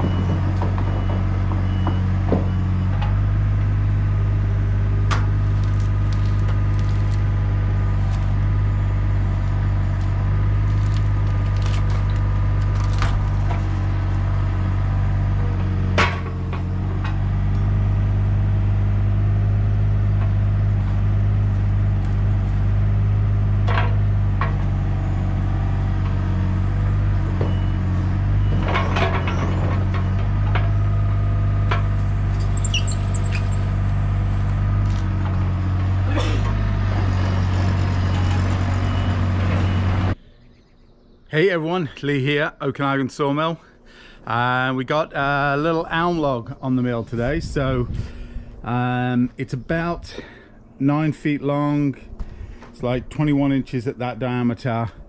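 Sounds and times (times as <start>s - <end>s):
sharp knocks and clanks: 0.0s - 3.2s, 15.6s - 17.2s
engine running steadily: 0.0s - 40.3s, 45.5s - 55.0s.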